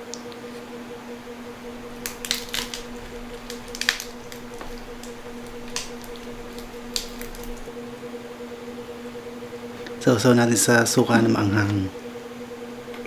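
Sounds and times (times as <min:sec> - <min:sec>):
crispy pork skin crunching: 0:01.7 - 0:07.7.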